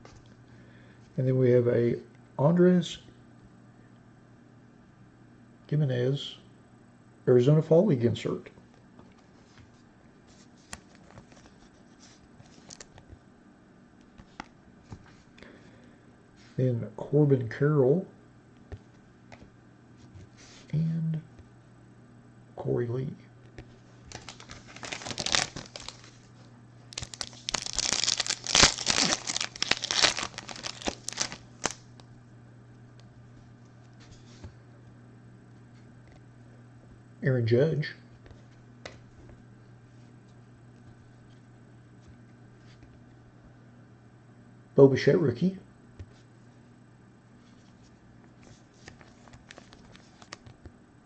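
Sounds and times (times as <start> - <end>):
cards rustling: 10.4 - 13.1, 23.6 - 31.8, 47.4 - 50.6
foil wrapper tearing and crinkling: 24.1 - 26.3, 26.9 - 32.0, 48.8 - 50.5.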